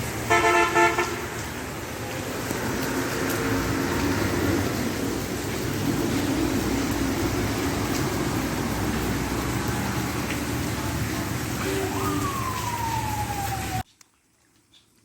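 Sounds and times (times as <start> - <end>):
rain: 0.0 - 15.0
rising and falling tone: 11.6 - 13.8.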